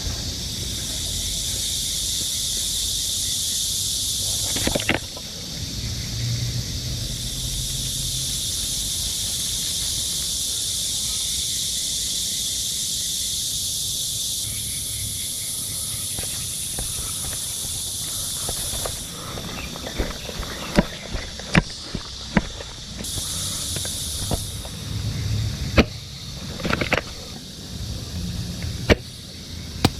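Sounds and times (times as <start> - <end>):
high-pitched insect chorus: 0.0 - 29.9.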